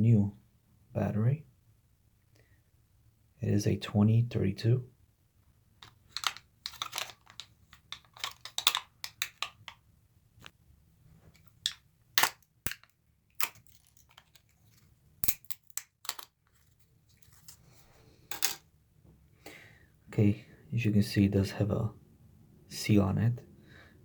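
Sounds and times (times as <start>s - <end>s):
plastic packaging crinkling: 6.1s - 9.7s, 11.4s - 14.9s.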